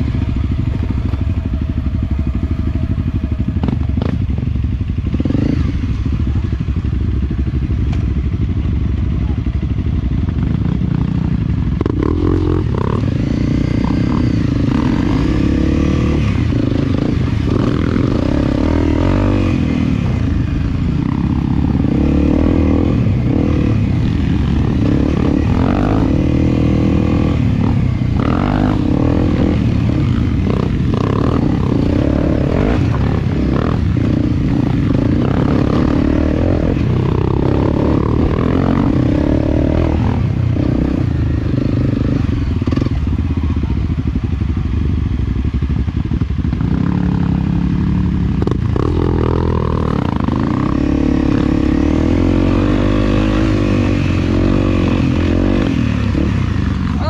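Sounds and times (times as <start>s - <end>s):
dirt bike engine revving: 0.0s - 4.4s, 10.5s - 43.1s, 46.5s - 57.0s.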